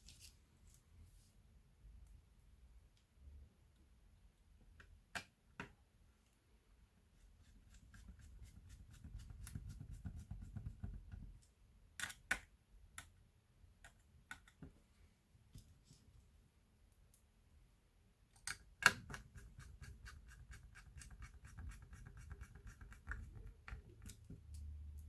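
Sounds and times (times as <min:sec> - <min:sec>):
small parts clicking and tapping: 0:13.8 - 0:14.7, 0:18.3 - 0:19.4.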